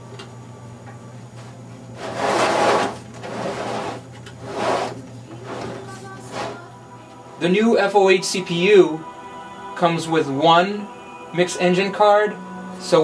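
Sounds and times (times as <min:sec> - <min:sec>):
faint steady hum: 0:00.0 - 0:13.0
metal sections scraping: 0:02.0 - 0:06.7.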